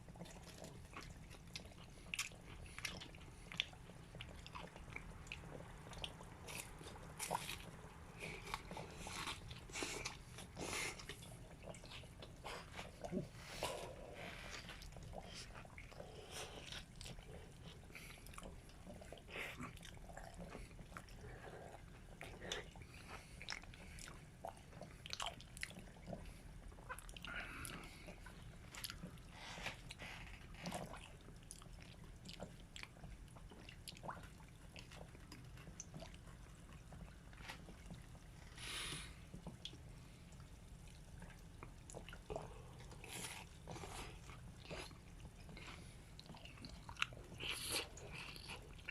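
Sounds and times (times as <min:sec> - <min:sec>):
person crunching and chewing: 0:41.9 - 0:48.9.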